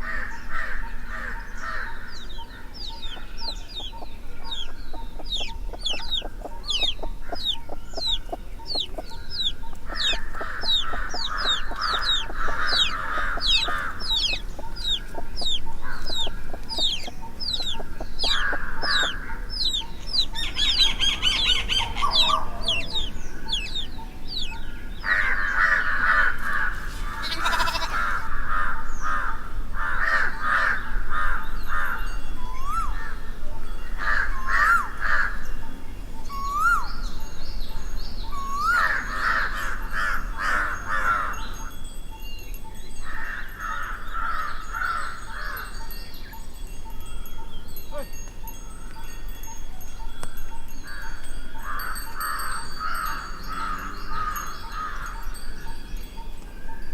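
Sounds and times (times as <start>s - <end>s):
rapid repeated bird calls: 0.0s - 29.3s
faint high bird chirping: 0.8s - 25.6s, 31.5s - 43.2s.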